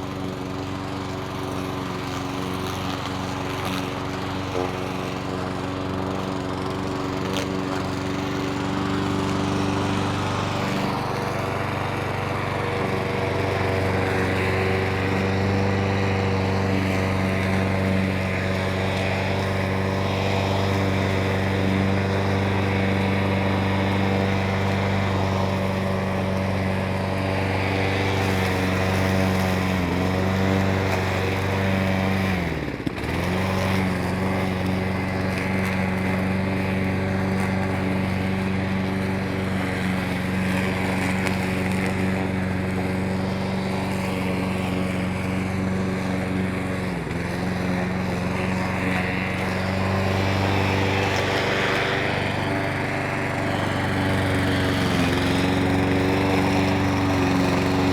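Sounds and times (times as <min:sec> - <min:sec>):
lawn mower engine running: 0:00.0 - 0:57.9.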